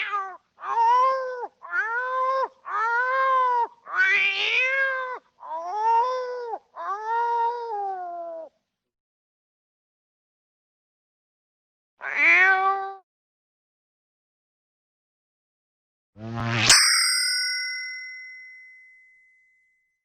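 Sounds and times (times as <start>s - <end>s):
cat meowing: 0.0s - 8.5s, 12.0s - 13.0s.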